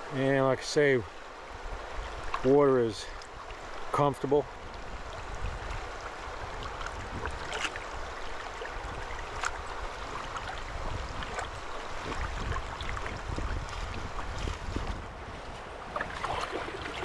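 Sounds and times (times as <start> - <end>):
small water splashes: 1.8 - 15.0, 15.8 - 17.0
water sloshing around wading legs: 3.1 - 17.0.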